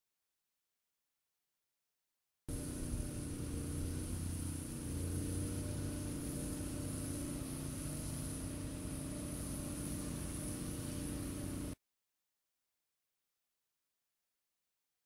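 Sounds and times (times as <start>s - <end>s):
engine humming: 2.5s - 11.8s
high hiss: 2.5s - 11.8s.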